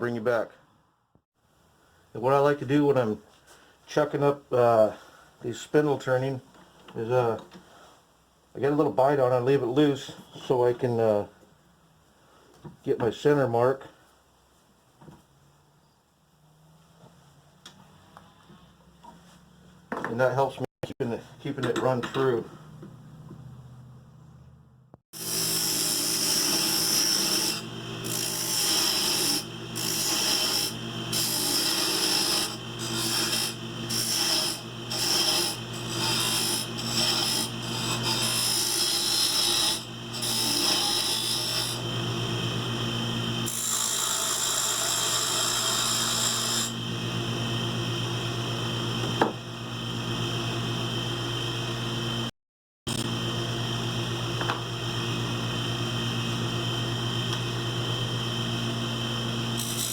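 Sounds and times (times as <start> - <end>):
turning tool cutting wood: 25.2 - 49.4, 52.9 - 59.9.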